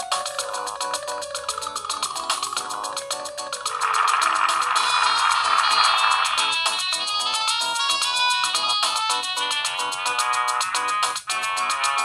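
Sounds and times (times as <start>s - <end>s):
electronic ringtone melody: 0.0s - 12.0s.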